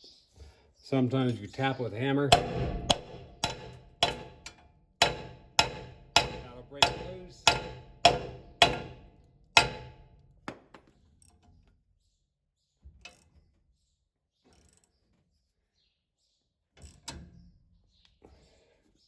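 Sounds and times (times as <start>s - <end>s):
hammer striking metal: 2.3s - 10.1s.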